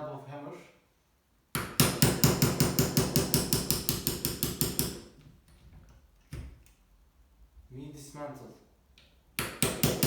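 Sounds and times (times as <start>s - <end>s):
hammer tapping on metal: 1.6s - 5.0s.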